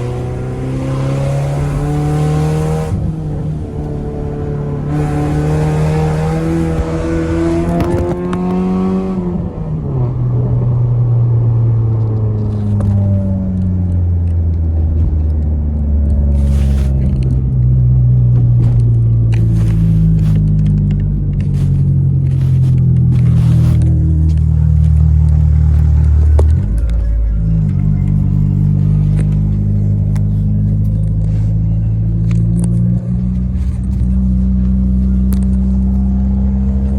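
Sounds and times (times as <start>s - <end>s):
car engine revving: 0.0s - 36.9s.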